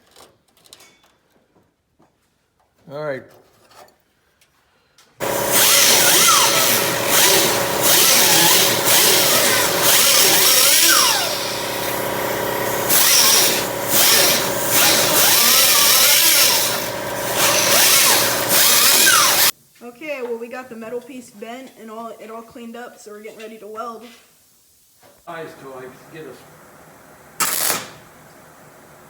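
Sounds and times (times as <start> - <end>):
power tool grinding metal: 5.2 - 19.5.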